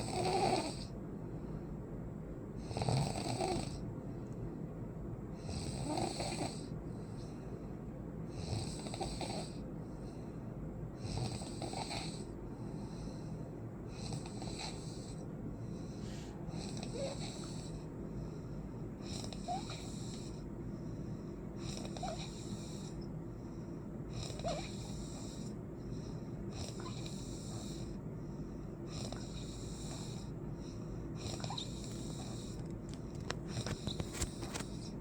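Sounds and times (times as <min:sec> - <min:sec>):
person snoring: 0:16.0 - 0:17.8.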